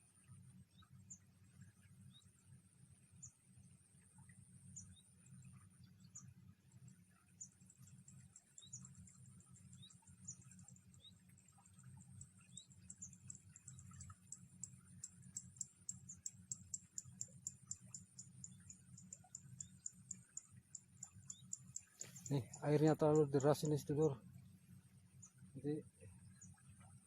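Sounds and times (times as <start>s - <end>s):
small birds chirping: 4.7s - 24.2s.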